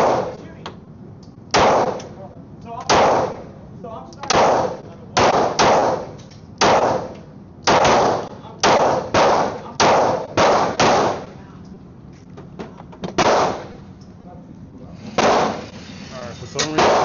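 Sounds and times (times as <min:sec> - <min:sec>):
pistol shots echoing: 0:00.0 - 0:00.4, 0:01.5 - 0:02.1, 0:02.9 - 0:03.4, 0:04.2 - 0:11.3, 0:13.2 - 0:13.8, 0:15.2 - 0:15.6, 0:16.8 - 0:17.0.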